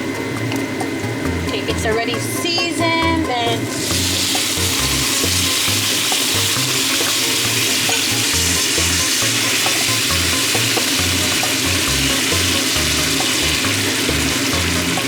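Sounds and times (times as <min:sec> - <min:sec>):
background music with low bass: 0:00.0 - 0:15.0
meat sizzling in a pan: 0:03.7 - 0:15.0.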